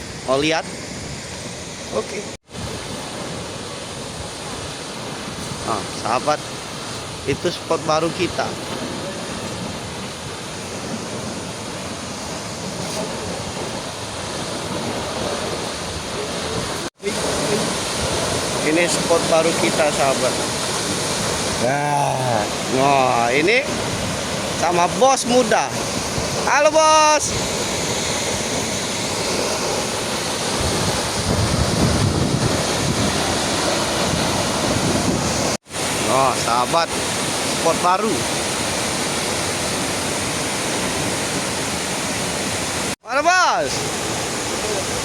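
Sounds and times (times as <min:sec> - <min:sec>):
waterfall rushing: 0:00.0 - 0:45.0
wind buffeting microphone: 0:29.9 - 0:35.6.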